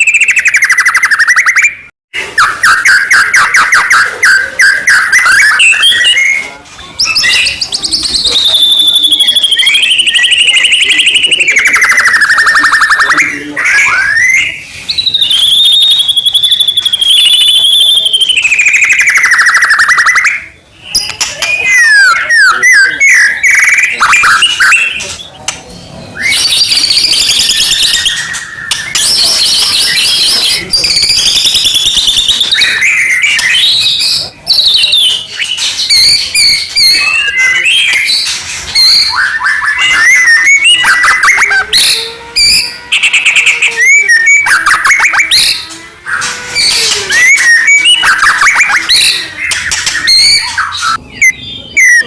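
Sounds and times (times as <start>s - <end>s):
songbird singing trills: 0.0s - 25.4s, 26.1s - 52.0s.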